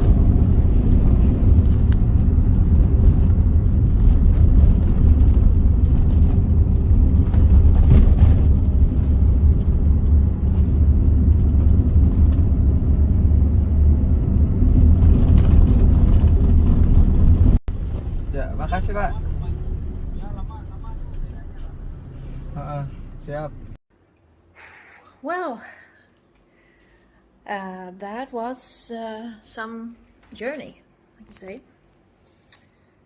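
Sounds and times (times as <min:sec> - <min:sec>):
car interior rumble: 0:00.0 - 0:23.8
faint engine hum: 0:00.0 - 0:23.8.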